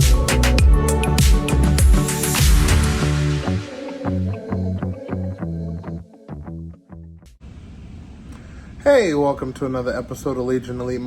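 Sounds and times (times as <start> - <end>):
bass notes: 0.0 - 7.4.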